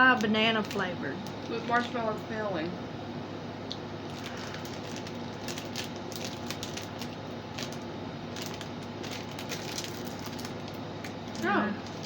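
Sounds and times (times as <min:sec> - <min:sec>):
steady low hum: 0:00.0 - 0:12.0
plastic wrapper crinkling: 0:04.1 - 0:12.0.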